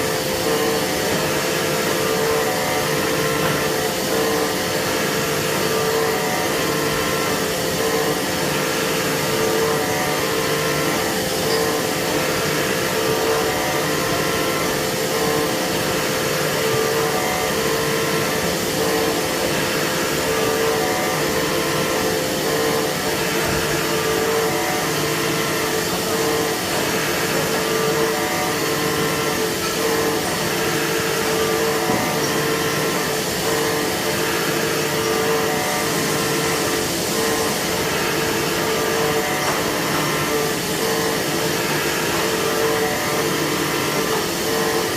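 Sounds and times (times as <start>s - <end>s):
machine whirring and humming: 0.0s - 44.9s.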